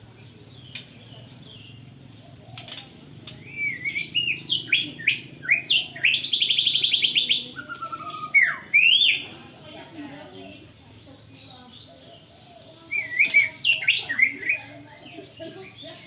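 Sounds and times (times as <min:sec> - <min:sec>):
bird singing whistled notes: 0:00.2 - 0:09.3, 0:10.9 - 0:14.8
bird fast trill: 0:01.6 - 0:09.3, 0:10.9 - 0:14.8.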